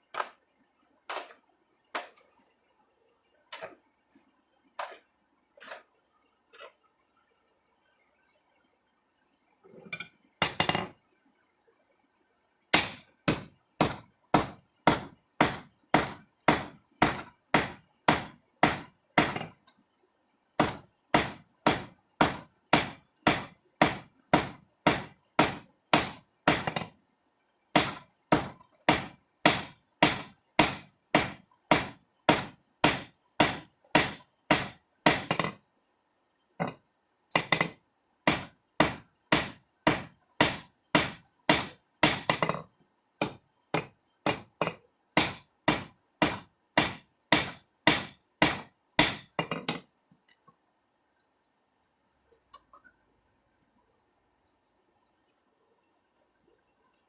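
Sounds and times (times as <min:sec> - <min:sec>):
hammer striking metal on anvil: 0:12.8 - 0:19.5, 0:20.6 - 0:26.8, 0:27.8 - 0:35.5, 0:37.4 - 0:42.6, 0:45.2 - 0:49.8.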